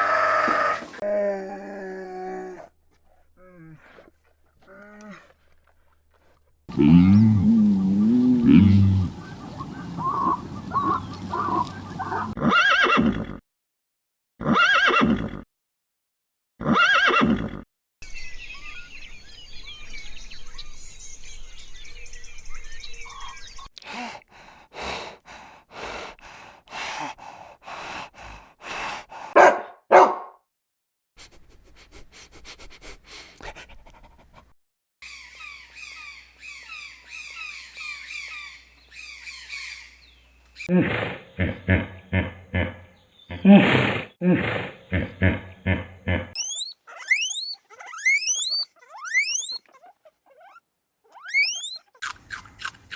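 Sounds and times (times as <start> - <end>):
drawn-out animal calls: 0.0 - 1.0, 6.7 - 13.1, 40.6 - 52.0
high chirping: 6.7 - 12.4, 45.6 - 49.6, 51.2 - 51.8
high twittering: 6.7 - 12.4, 44.9 - 49.6, 51.3 - 51.8
short animal calls: 6.7 - 12.8, 40.6 - 52.0.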